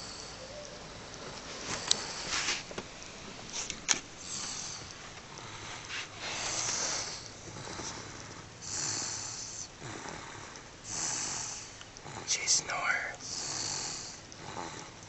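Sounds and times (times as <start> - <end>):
snoring breaths: 0.0 - 2.7, 3.4 - 15.0.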